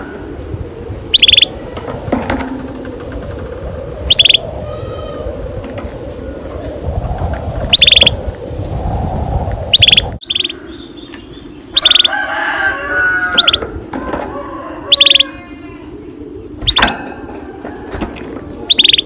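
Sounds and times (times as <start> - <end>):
canaries chirping: 1.2 - 1.5, 4.1 - 5.2, 7.8 - 8.2, 9.8 - 13.7, 14.9 - 19.0.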